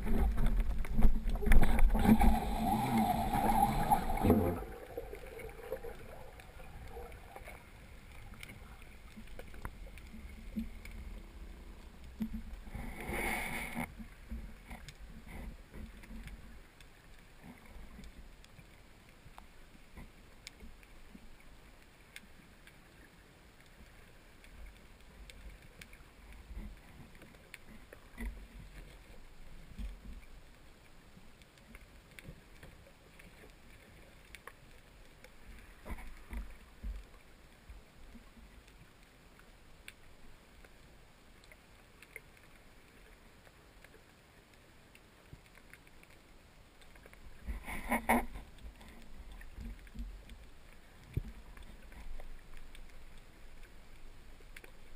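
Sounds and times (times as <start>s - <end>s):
muffled underwater rumble: 0.0s - 18.5s
small clicks: 13.6s - 54.9s.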